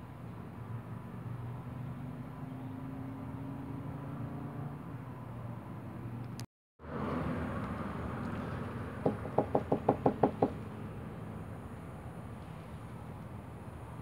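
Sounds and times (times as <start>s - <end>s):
sharp knocks: 9.0s - 10.6s.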